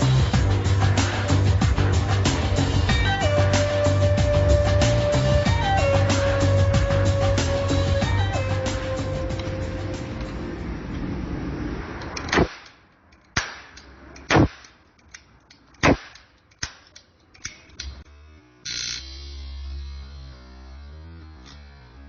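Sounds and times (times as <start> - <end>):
background music: 0.0 - 11.0.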